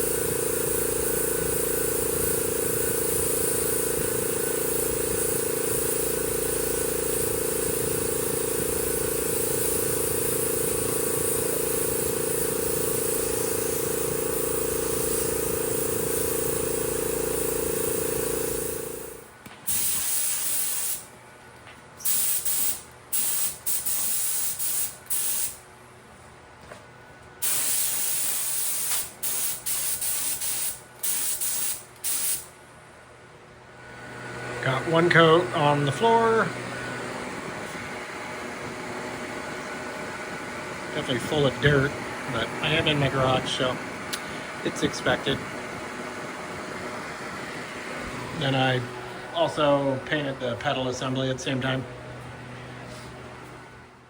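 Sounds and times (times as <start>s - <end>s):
machine hum: 0.0s - 20.0s, 30.7s - 54.0s
spray gun hissing: 0.0s - 21.1s, 22.0s - 25.6s, 27.4s - 32.5s.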